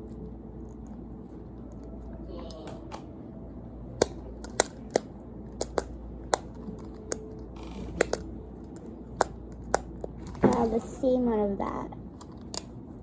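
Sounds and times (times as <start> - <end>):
plastic fidget toys clicking: 4.0 - 7.2, 8.0 - 10.1.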